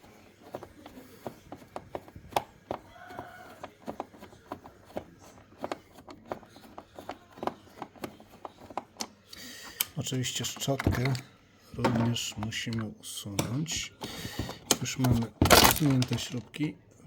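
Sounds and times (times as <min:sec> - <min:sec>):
screwdriver clicks and taps: 0:00.0 - 0:09.1.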